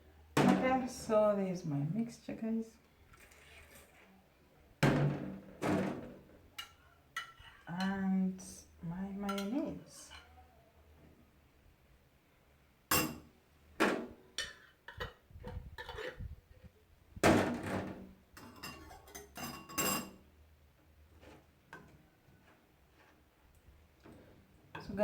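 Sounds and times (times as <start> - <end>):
utensil scraping bowl: 3.1 - 4.2, 15.8 - 16.2.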